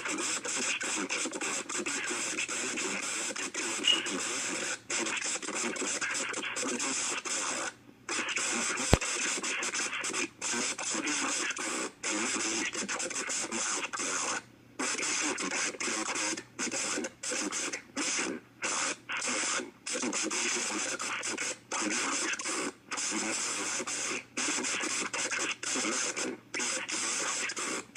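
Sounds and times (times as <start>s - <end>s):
radio static and hiss: 0.0s - 27.9s
broadcast voice speaking: 1.2s - 7.4s.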